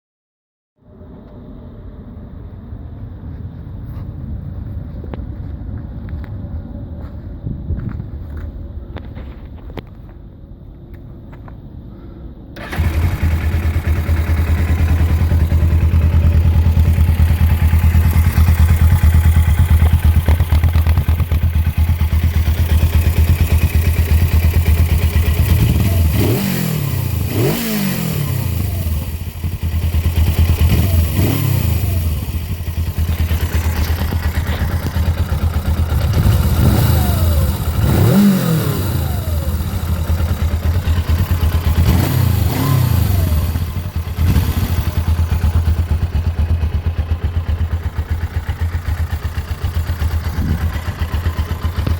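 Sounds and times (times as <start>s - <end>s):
motorcycle engine idling and revving: 12.5s - 51.9s.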